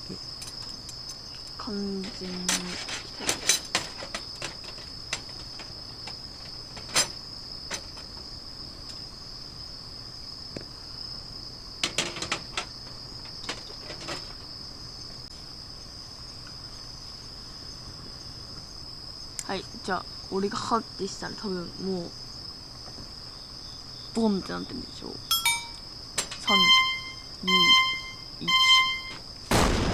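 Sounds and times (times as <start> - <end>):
crickets chirping: 0.0 - 29.9.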